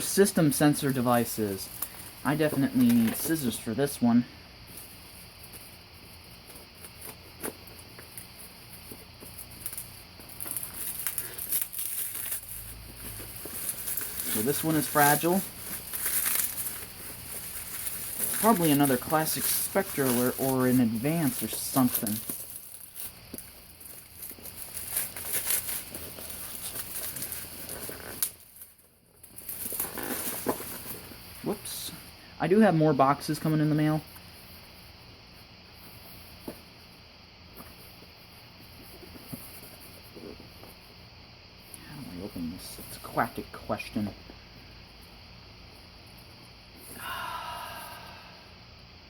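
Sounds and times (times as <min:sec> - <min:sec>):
cardboard packaging rustling: 0:00.0 - 0:04.0, 0:04.6 - 0:31.7.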